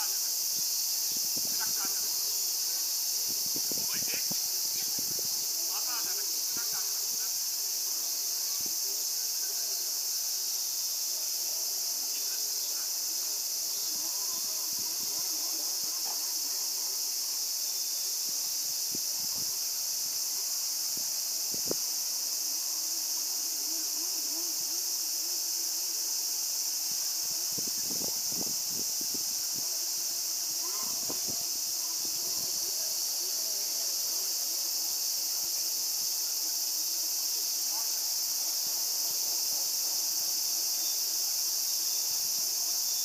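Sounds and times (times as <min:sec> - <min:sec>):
faint distant voices: 0:00.0 - 0:43.0
high-pitched insect chorus: 0:00.0 - 0:43.0.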